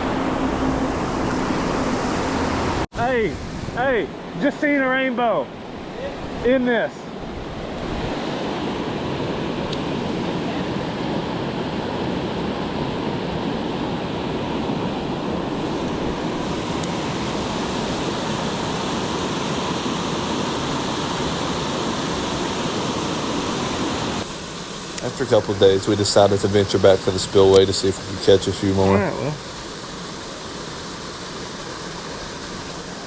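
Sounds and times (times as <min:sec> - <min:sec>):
creek water rushing: 0:00.0 - 0:33.0.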